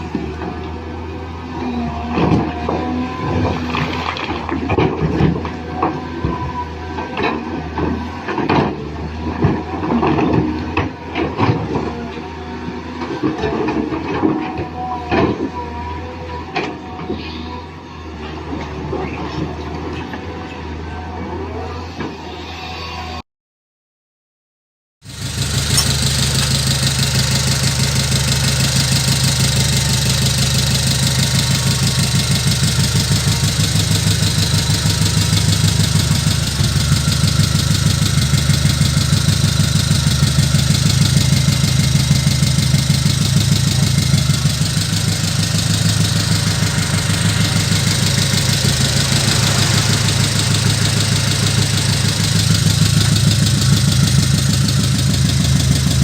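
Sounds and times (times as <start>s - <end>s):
engine idling: 25.1s - 56.0s.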